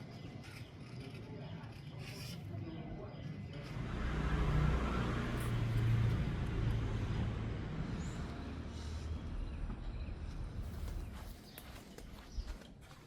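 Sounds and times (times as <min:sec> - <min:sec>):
engine rumbling: 0:03.5 - 0:11.4.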